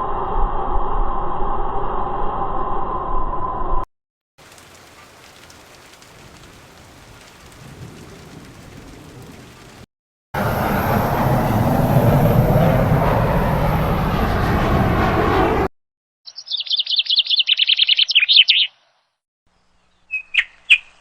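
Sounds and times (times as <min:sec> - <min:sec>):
heavy rain: 0:04.4 - 0:10.7
low rumble of thunder: 0:05.3 - 0:09.8.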